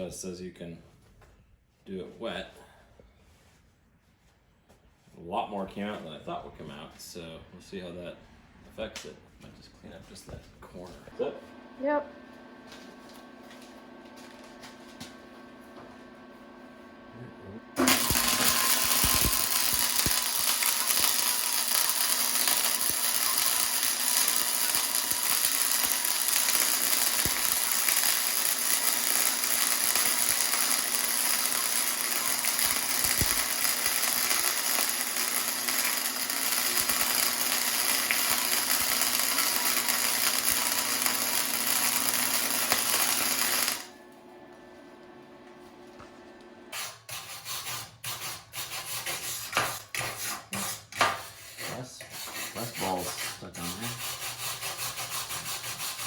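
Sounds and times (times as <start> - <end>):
welding arc crackling: 17.8 - 43.9.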